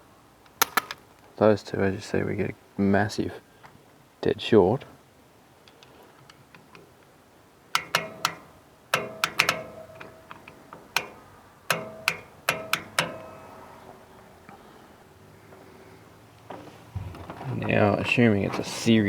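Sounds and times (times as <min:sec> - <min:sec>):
metallic clicks on terminals: 0:00.4 - 0:01.3, 0:07.7 - 0:14.6.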